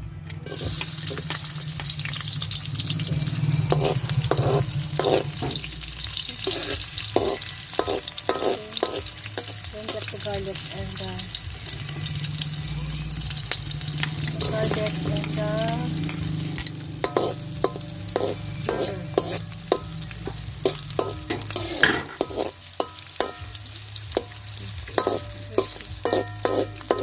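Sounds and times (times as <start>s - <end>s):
food sizzling in hot oil: 0.4s - 27.0s
utensil knocking against pan: 24.9s - 27.0s.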